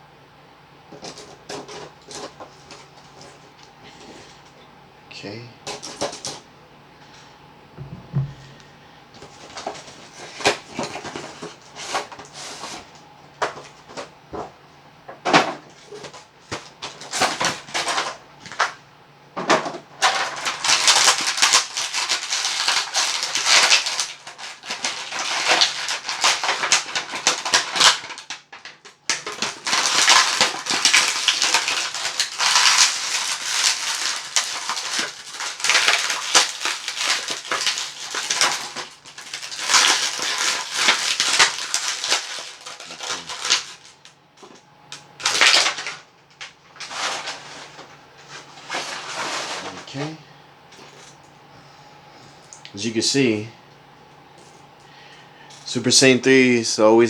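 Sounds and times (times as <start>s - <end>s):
plastic crinkling: 9.2s - 14.6s, 20.0s - 51.2s.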